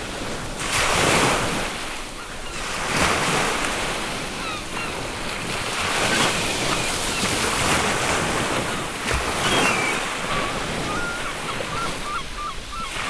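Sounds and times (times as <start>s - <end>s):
ocean surf washing: 0.0s - 13.0s
faint gull calls: 9.3s - 13.0s.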